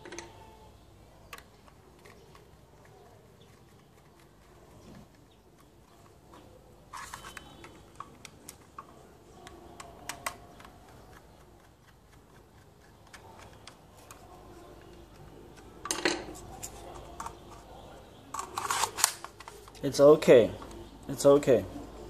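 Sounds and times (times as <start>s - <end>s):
plastic toy parts clicking: 7.0s - 11.1s.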